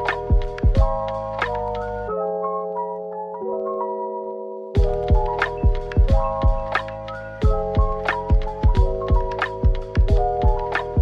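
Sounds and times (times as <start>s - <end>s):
steady kick drum beat: 0.0s - 1.1s, 4.8s - 6.8s, 7.4s - 11.0s.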